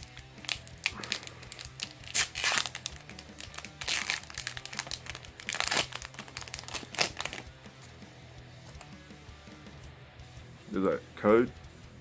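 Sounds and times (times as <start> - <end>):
foil wrapper crinkling and tearing: 0.0 - 7.5.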